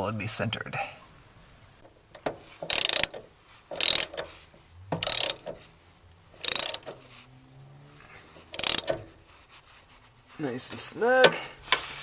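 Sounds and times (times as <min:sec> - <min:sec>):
socket ratchet clicking: 0:02.1 - 0:04.3, 0:05.0 - 0:05.6, 0:06.4 - 0:07.0, 0:08.5 - 0:09.0.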